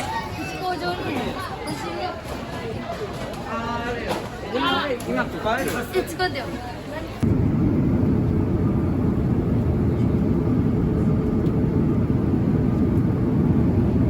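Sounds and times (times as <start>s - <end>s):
vehicle rumbling: 7.2s - 14.0s.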